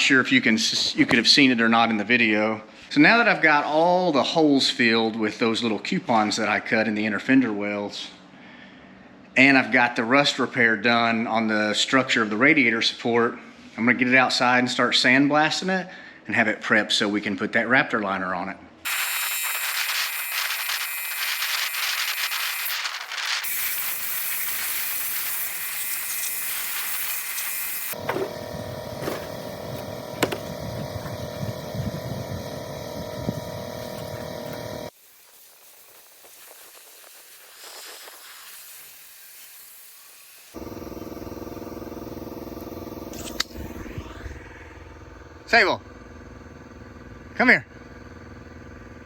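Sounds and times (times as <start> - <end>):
shop hum: 18.6 - 35.0, 40.5 - 49.0
sandblaster hissing: 18.9 - 40.7.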